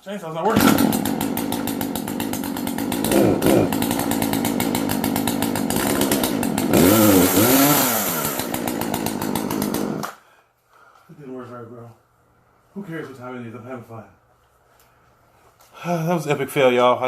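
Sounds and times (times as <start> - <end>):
chainsaw engine revving: 0.5 - 10.2.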